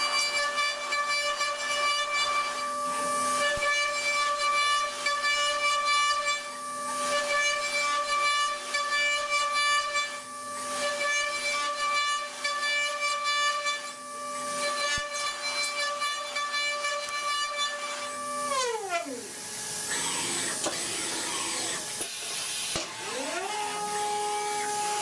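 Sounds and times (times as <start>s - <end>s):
milling cutter whining: 0.1s - 25.0s
hiss: 19.6s - 22.9s.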